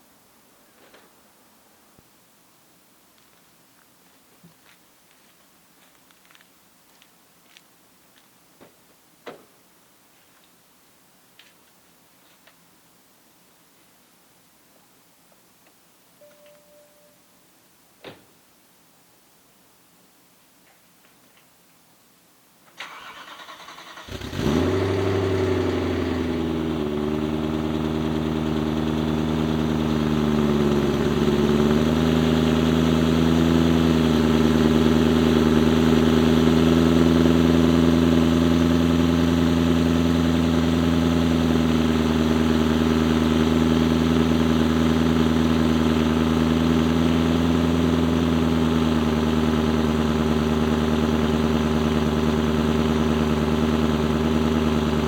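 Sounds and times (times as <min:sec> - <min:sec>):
car engine starting and idling: 0:22.7 - 0:55.0.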